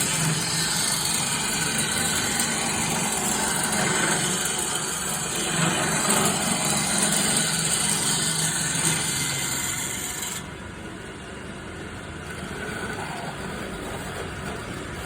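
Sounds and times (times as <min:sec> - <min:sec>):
cutting tool hissing on wood: 0:00.0 - 0:10.4
lathe motor hum: 0:00.0 - 0:15.0.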